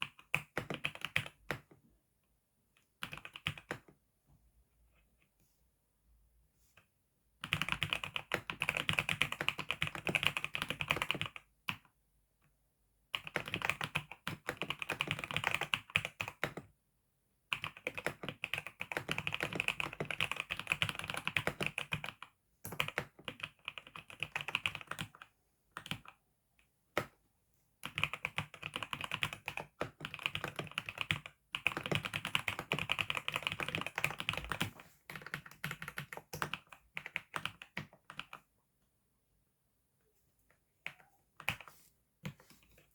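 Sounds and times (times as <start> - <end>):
fast typing on keyboard: 0.0 - 1.7, 3.0 - 3.9, 7.4 - 11.8, 13.2 - 16.7, 17.5 - 26.2, 27.8 - 38.4, 40.8 - 42.4.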